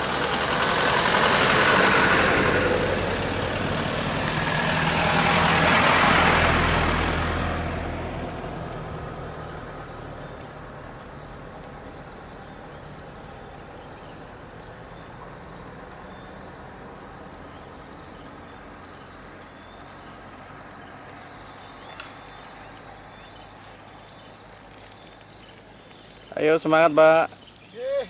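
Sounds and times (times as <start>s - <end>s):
high insect buzz: 12.0s - 28.0s.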